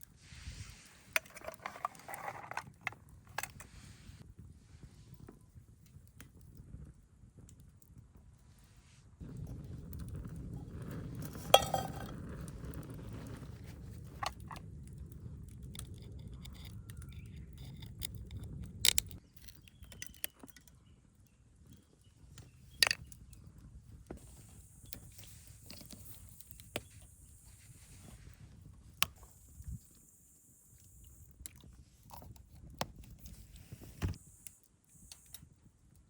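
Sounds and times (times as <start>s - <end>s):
metal cookware clinking: 11.4s - 12.1s.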